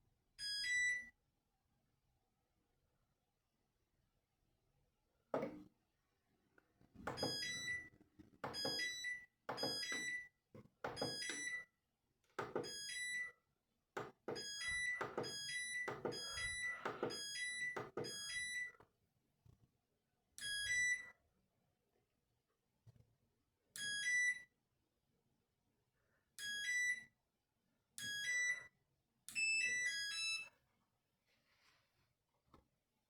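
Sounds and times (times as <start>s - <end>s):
washing machine panel beeps: 7.1s - 10.3s, 10.9s - 11.7s, 12.5s - 13.3s, 14.3s - 18.7s, 29.4s - 30.5s.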